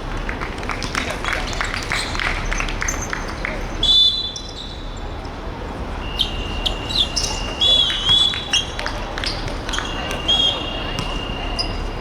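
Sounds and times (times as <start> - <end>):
shoe squeaks: 6.0 - 12.0.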